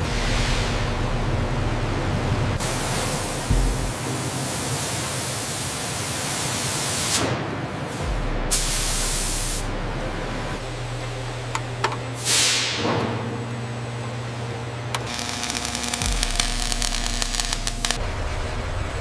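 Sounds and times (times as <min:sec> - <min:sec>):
low steady hum: 0:00.3 - 0:05.5.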